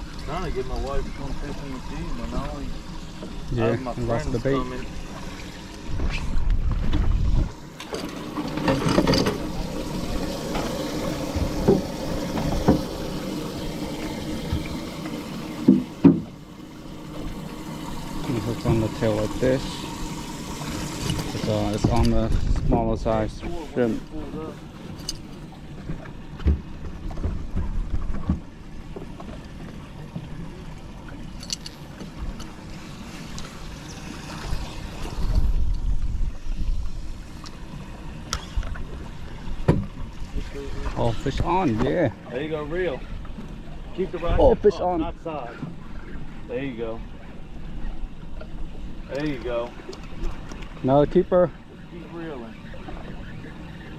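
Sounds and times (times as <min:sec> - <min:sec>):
water lapping against boat hull: 0:00.0 - 0:53.9
wind buffeting microphone: 0:05.8 - 0:07.6, 0:20.0 - 0:23.5.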